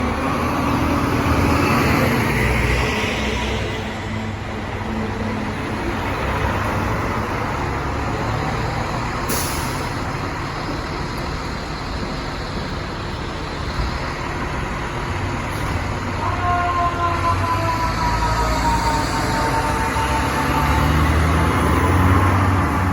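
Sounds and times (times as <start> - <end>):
diesel trucks rumbling: 0.0 - 22.9
road and traffic noise: 0.0 - 22.9
air brake hiss: 9.3 - 9.9.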